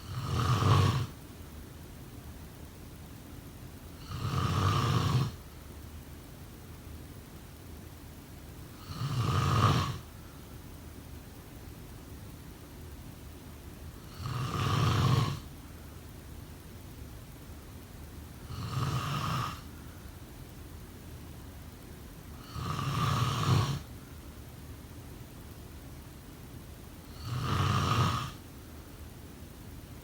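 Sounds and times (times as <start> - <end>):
person snoring: 0.0 - 1.2, 4.0 - 5.4, 8.8 - 10.1, 14.1 - 15.5, 18.4 - 19.7, 22.4 - 23.9, 27.1 - 28.4.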